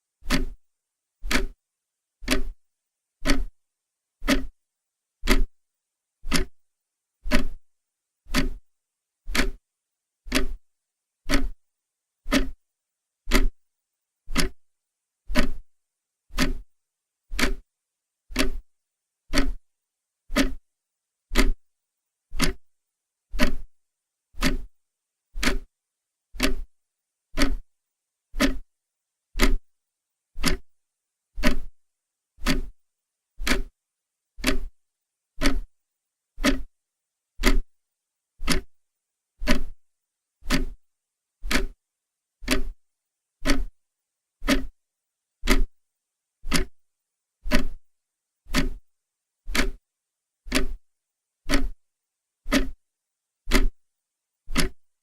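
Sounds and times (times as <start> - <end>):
clock ticking: 0.2 - 0.6, 1.2 - 1.6, 2.2 - 2.6, 3.2 - 3.5, 4.2 - 4.5, 5.2 - 5.5, 6.3 - 6.5, 7.3 - 7.6, 8.3 - 8.6, 9.3 - 9.6, 10.3 - 10.6, 11.3 - 11.6, 12.3 - 12.6, 13.3 - 13.6, 14.3 - 14.6, 15.3 - 15.6, 16.3 - 16.6, 17.3 - 17.6, 18.3 - 18.6, 19.3 - 19.6, 20.3 - 20.6, 21.3 - 21.6, 22.4 - 22.6, 23.4 - 23.7, 24.4 - 24.7, 25.4 - 25.7, 26.4 - 26.7, 27.4 - 27.7, 28.4 - 28.6, 29.4 - 29.6, 30.4 - 30.7, 31.4 - 31.7, 32.4 - 32.7, 33.4 - 33.7, 34.4 - 34.7, 35.4 - 35.7, 36.4 - 36.7, 37.4 - 37.7, 38.4 - 38.8, 39.4 - 39.8, 40.4 - 40.8, 41.4 - 41.8, 42.4 - 42.8, 43.4 - 43.8, 44.4 - 44.7, 45.4 - 45.7, 46.5 - 46.8, 47.5 - 47.8, 48.5 - 48.8, 49.5 - 49.8, 50.5 - 50.8, 51.5 - 51.8, 52.5 - 52.8, 53.5 - 53.8, 54.5 - 54.8.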